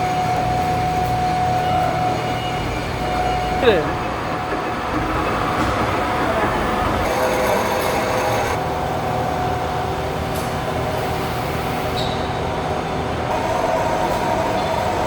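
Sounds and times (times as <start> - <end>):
metal lathe running: 0.0 - 10.2.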